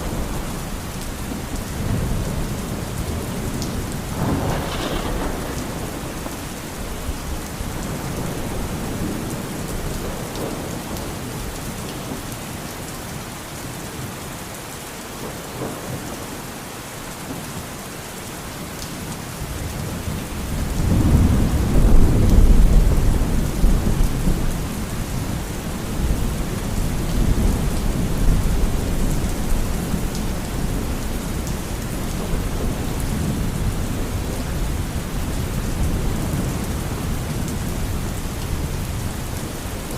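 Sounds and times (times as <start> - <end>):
low thunder rumble: 0.0 - 10.9, 19.5 - 39.9
steady rain: 0.0 - 39.9.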